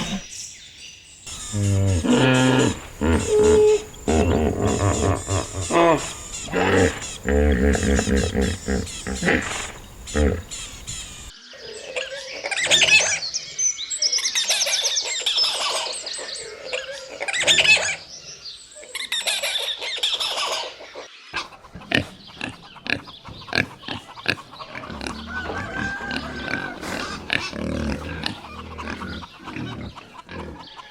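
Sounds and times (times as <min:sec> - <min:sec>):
high-pitched animal calls: 0:01.3 - 0:13.3.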